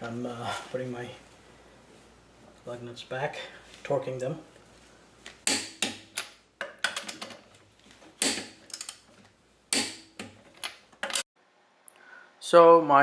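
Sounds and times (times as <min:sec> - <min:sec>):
impact wrench hammering: 0:05.4 - 0:06.4, 0:08.2 - 0:08.6, 0:09.7 - 0:10.2.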